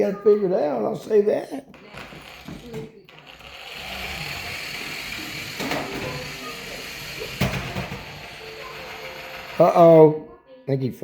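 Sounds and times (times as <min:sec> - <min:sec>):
toy truck knocking into things: 0:01.8 - 0:10.0
toy electric motor whirr: 0:01.8 - 0:10.2.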